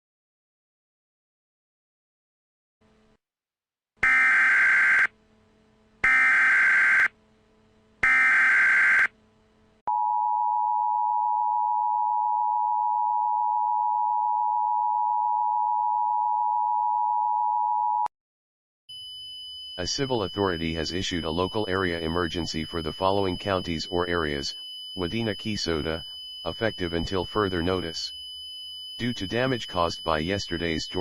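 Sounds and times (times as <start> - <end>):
two-tone attention signal: 18.9 - 31.0
digital data screech bursts: 19.6 - 31.0.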